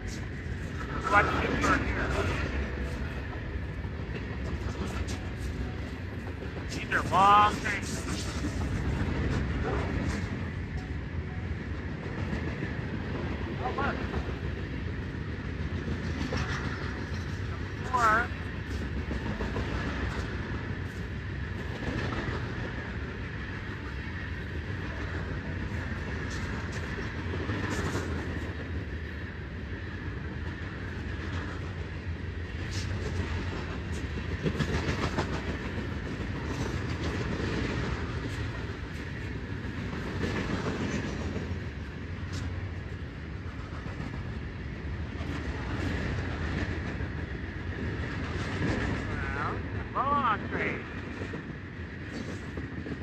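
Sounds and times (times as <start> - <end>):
train rumbling past: 0.0 - 53.0
wheels clacking on rails: 0.0 - 53.0.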